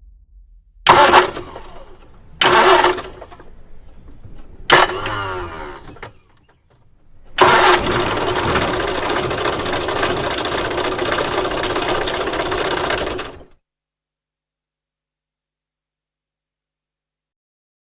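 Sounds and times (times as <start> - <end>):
bus engine cranking: 0.9 - 13.6.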